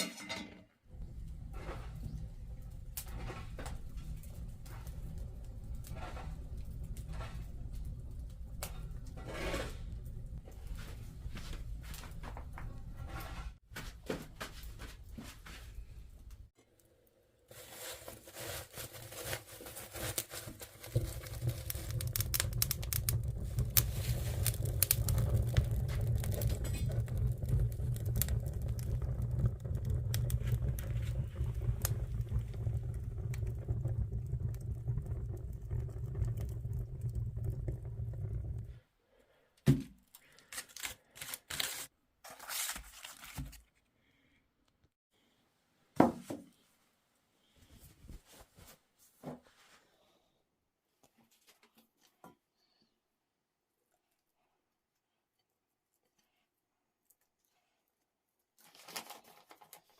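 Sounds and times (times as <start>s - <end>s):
wood fire crackling: 0.9s - 13.6s, 14.5s - 39.4s, 40.2s - 41.9s
low rumble: 21.3s - 38.8s.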